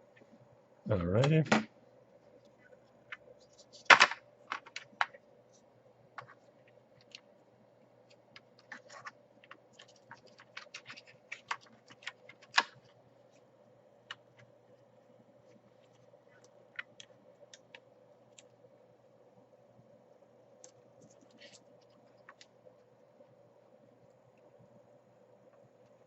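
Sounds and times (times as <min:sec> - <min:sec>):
laptop parts clicking and tapping: 0:08.1 - 0:13.0.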